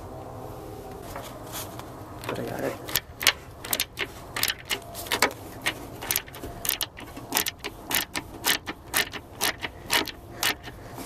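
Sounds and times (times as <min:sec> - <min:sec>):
ratchet wrench clicking: 0:02.9 - 0:10.8.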